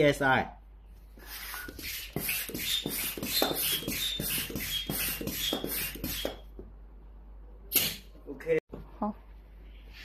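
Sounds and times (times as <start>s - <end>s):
air pump rasping strokes: 1.2s - 6.5s.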